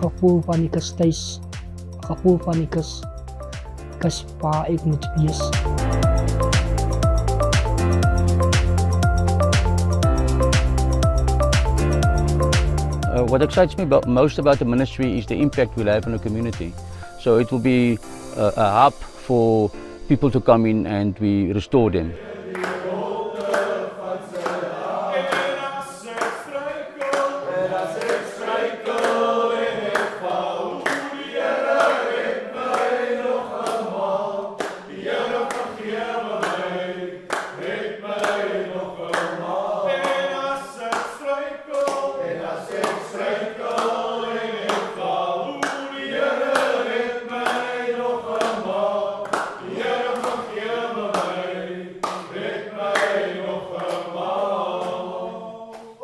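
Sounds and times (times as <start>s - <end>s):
choir singing: 0.0s - 0.9s, 22.0s - 56.0s
sharp rhythmic beats: 0.0s - 16.7s.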